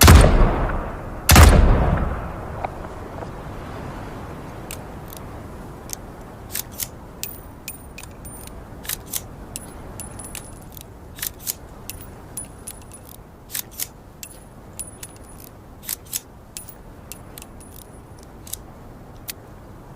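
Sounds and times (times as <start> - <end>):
revolver metallic clicks: 5.8 - 18.6.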